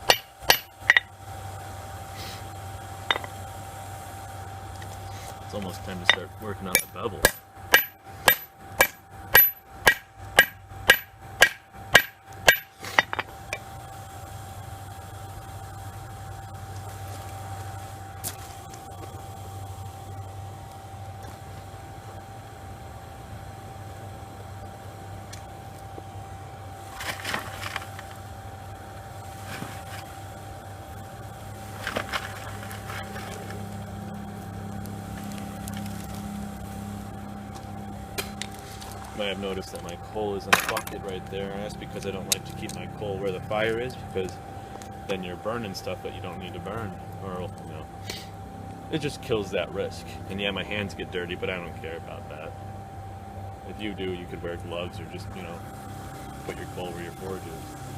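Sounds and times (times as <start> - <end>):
hammer blows on anvil: 0.0 - 1.1, 6.0 - 13.3
steady hum: 0.0 - 57.9.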